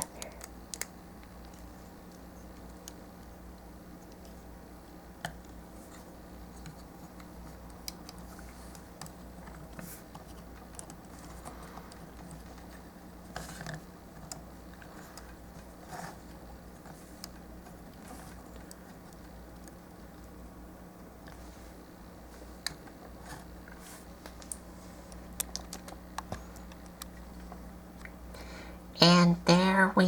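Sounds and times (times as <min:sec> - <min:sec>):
plastic parts clicking and scraping: 0:05.2 - 0:19.8.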